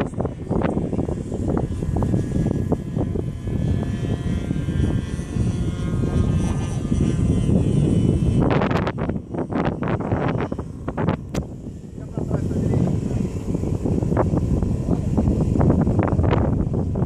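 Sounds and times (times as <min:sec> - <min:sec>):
model plane engine drone: 0:00.0 - 0:17.0
wind buffeting microphone: 0:00.0 - 0:17.0.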